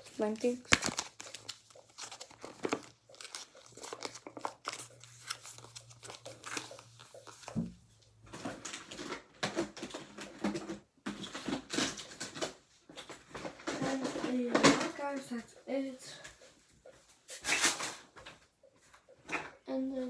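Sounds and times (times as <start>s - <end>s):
slime crinkling and crackling: 0.0s - 7.6s.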